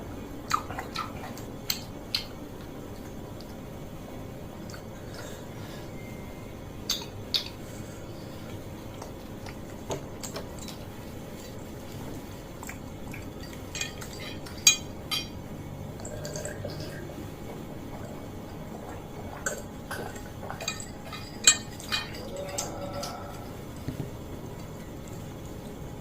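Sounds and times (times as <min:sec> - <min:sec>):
cutlery clinking on a plate: 0:20.6 - 0:23.2.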